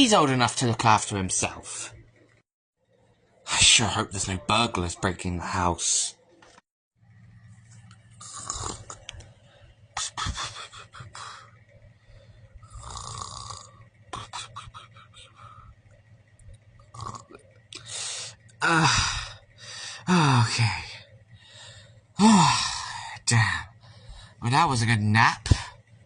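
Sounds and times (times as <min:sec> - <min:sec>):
person imitating snoring: 0:08.2 - 0:09.1, 0:12.6 - 0:15.6, 0:16.8 - 0:19.4, 0:22.2 - 0:23.1
person groaning: 0:18.6 - 0:19.4, 0:20.0 - 0:21.0, 0:22.2 - 0:23.3.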